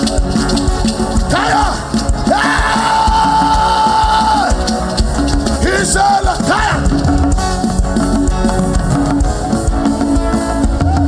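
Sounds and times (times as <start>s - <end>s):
drum kit: 0.0s - 11.0s
guitar: 0.0s - 11.0s
live band playing: 0.0s - 11.0s.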